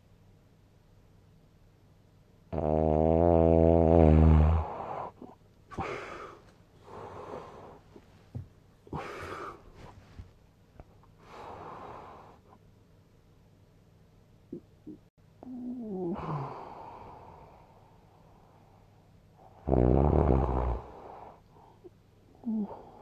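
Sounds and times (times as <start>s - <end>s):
person snoring: 2.5s - 7.8s, 15.4s - 17.6s, 19.4s - 21.4s, 22.4s - 23.0s
soft breathy breaths: 4.4s - 10.4s, 11.0s - 12.7s, 14.6s - 23.0s.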